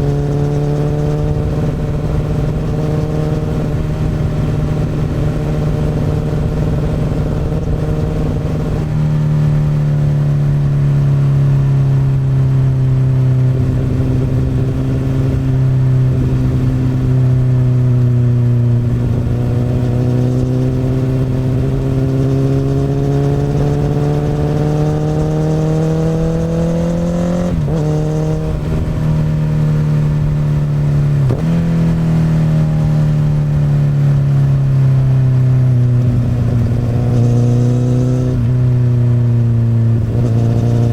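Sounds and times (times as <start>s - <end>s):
motorcycle engine: 0.0s - 40.9s.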